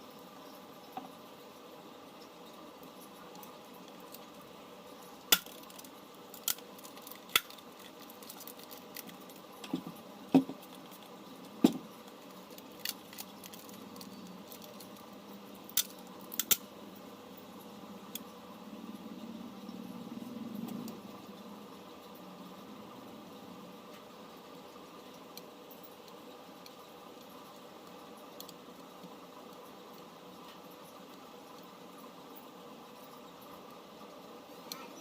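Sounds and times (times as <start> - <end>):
small tools clicking and tapping: 5.2 - 15.1, 15.7 - 16.7.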